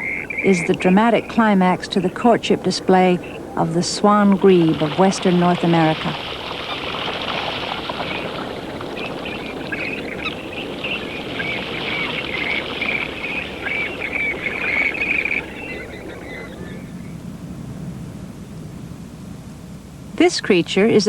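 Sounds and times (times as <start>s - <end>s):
short high bird calls: 0.0s - 0.6s, 7.7s - 17.1s
birds splashing across water: 0.0s - 17.1s.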